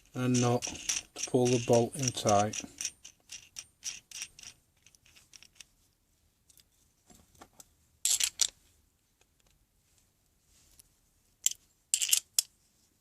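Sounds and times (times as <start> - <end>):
small metal clicks: 0.0 - 5.7.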